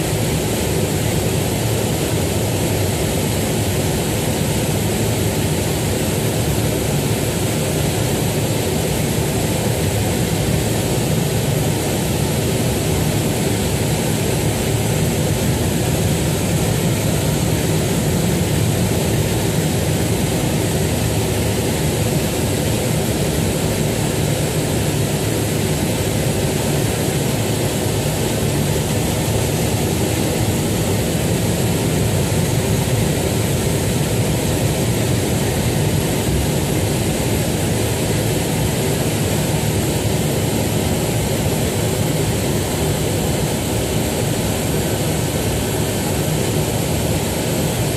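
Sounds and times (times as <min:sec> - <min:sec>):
propeller aircraft engine droning: 0:00.0 - 0:47.9.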